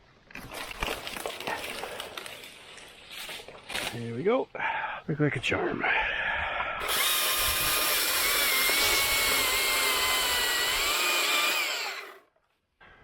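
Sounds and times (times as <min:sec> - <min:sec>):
chainsaw cutting wood: 0:06.8 - 0:12.3.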